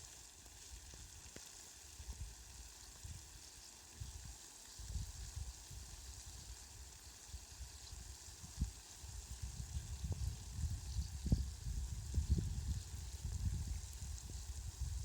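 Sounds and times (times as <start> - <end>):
steady rain falling: 0.0 - 9.3.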